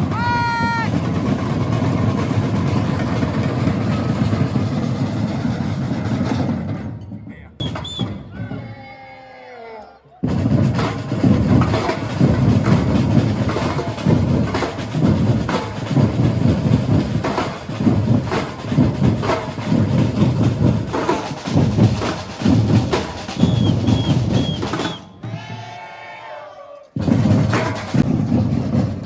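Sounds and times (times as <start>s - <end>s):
samba drums playing: 0.0s - 8.8s, 10.2s - 25.7s, 27.0s - 29.0s.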